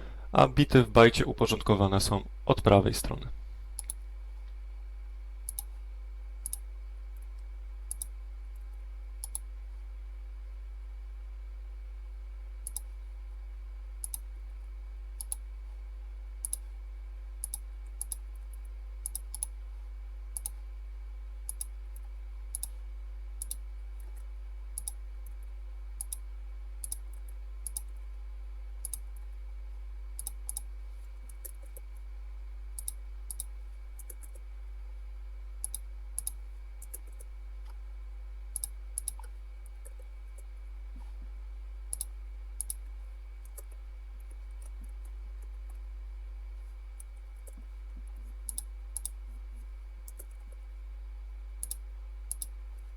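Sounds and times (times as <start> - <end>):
steady low hum: 0.0 - 52.9
computer mouse clicks: 3.8 - 4.0, 5.4 - 5.7, 6.4 - 8.2, 9.2 - 9.5, 12.6 - 12.9, 14.0 - 14.3, 15.2 - 15.4, 16.4 - 16.7, 17.4 - 19.6, 20.4 - 20.6, 21.5 - 22.8, 23.4 - 25.4, 26.0 - 26.2, 26.8 - 28.0, 28.8 - 29.3, 30.2 - 31.9, 32.8 - 34.5, 35.6 - 37.8, 38.5 - 40.5, 41.9 - 45.8, 47.0 - 49.2, 50.0 - 50.6, 51.6 - 52.6.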